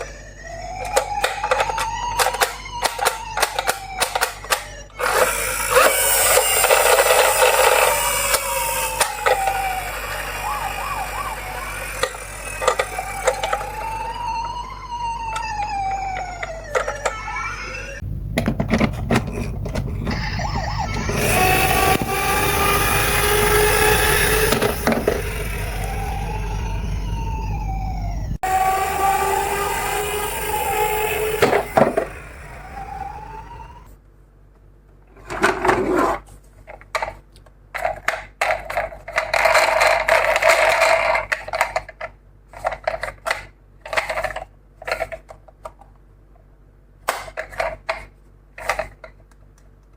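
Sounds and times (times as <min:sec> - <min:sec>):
ambulance siren wailing: 0:00.0 - 0:18.0, 0:19.1 - 0:33.9
toy cars rolling and clattering: 0:00.6 - 0:14.2, 0:16.2 - 0:17.6, 0:18.6 - 0:26.4, 0:28.4 - 0:33.9, 0:35.2 - 0:46.0, 0:47.0 - 0:49.4.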